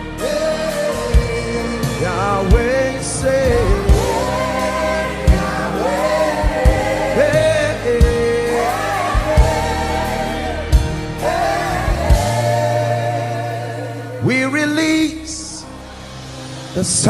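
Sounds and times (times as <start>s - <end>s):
voices singing gospel: 0.0s - 17.0s
drum hits: 3.6s - 12.8s.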